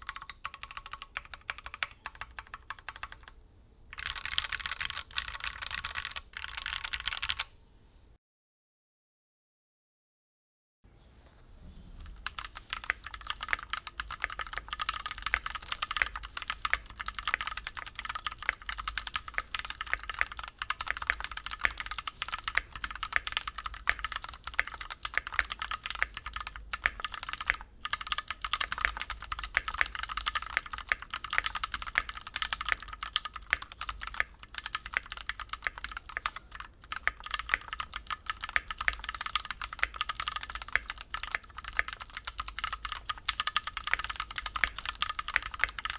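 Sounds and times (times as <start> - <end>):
mechanical keyboard typing: 0.0 - 7.5, 12.0 - 45.9.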